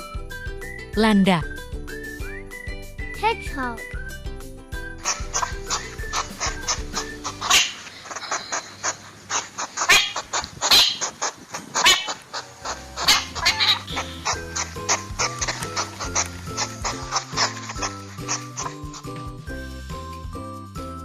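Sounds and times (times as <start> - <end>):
light background music: 0.0 - 8.9, 12.4 - 21.0.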